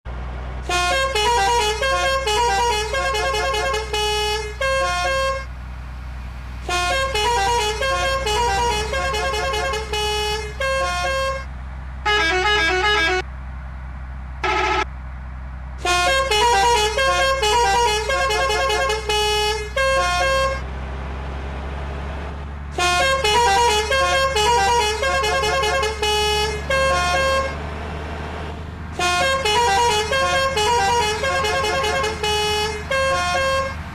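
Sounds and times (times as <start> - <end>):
low engine hum: 0.0 - 33.9
bus musical horn melodies: 0.6 - 5.6, 6.6 - 13.3, 14.4 - 14.9, 15.8 - 20.7, 22.7 - 27.7, 28.9 - 33.9.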